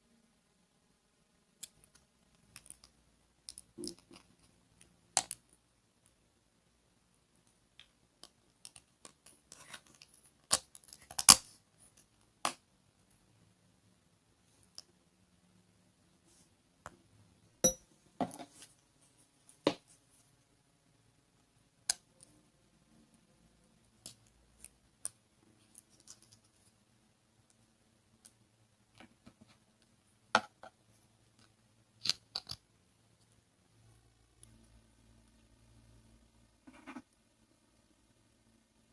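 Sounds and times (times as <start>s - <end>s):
sharp knocks or clinks: 17.6s - 18.4s.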